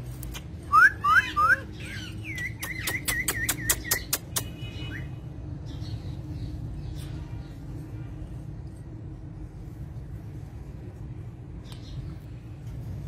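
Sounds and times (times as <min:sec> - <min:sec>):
parrot chirping: 0:00.7 - 0:05.1.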